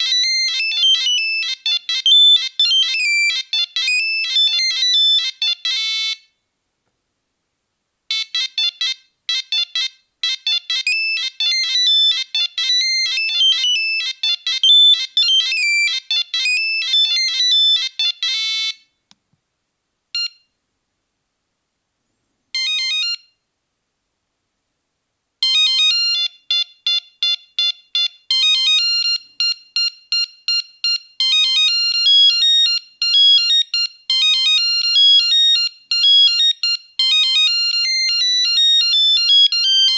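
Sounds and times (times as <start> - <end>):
monophonic ringtone beeping melody: 0.0 - 6.2, 8.4 - 18.8, 25.4 - 39.9.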